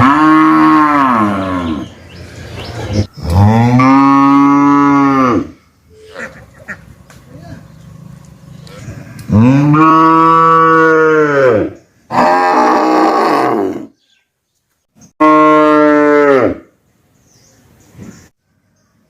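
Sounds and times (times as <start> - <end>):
cattle mooing: 0.0 - 1.9, 3.2 - 6.3, 9.3 - 13.9, 15.2 - 16.6.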